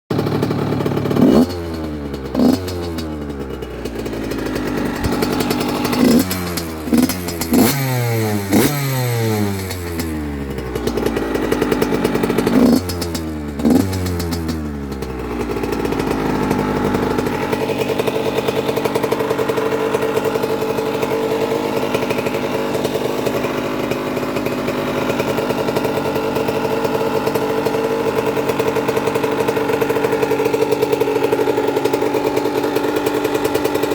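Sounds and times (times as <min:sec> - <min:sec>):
dirt bike engine revving and idling: 0:00.1 - 0:33.9.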